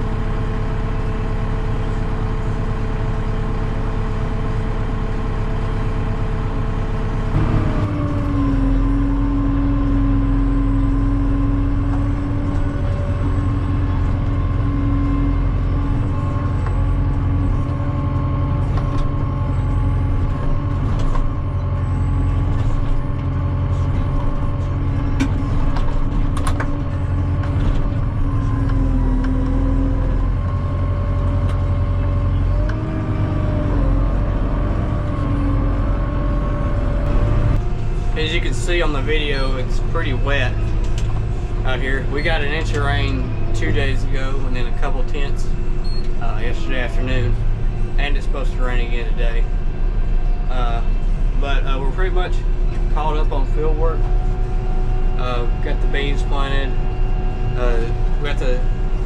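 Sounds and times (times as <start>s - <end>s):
farm machine engine rumbling: 0.0s - 59.0s.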